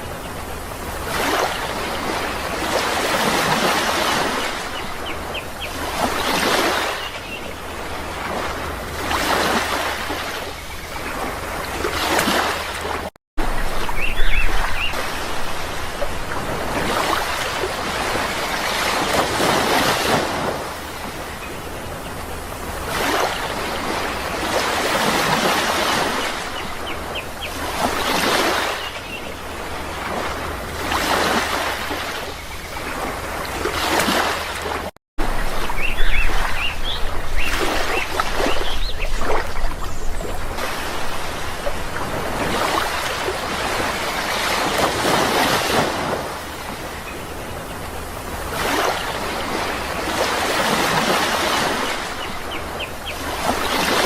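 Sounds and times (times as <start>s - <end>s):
sea waves breaking: 0.0s - 54.0s.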